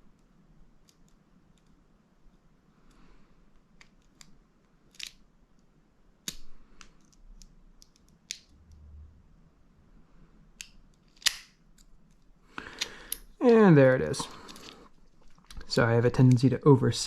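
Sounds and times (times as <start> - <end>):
lock pick clicking in padlock: 10.6 - 11.5.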